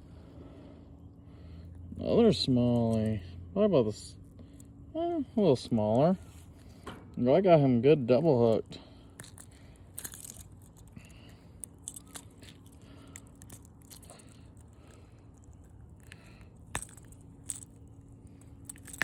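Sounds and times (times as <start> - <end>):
faint steady hum: 0.0 - 19.0
small handling clicks and crackles: 8.2 - 19.0.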